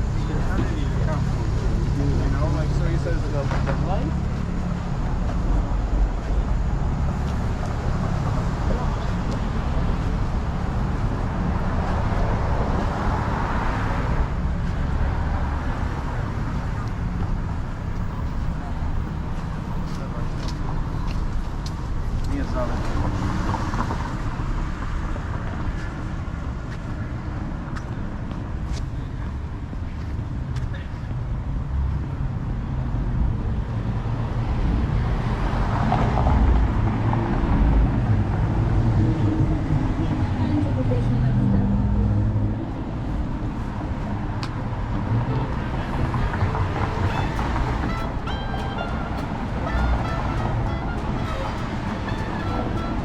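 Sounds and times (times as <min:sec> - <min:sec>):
traffic rumble: 0:00.0 - 0:53.0
vehicle passing: 0:43.7 - 0:53.0.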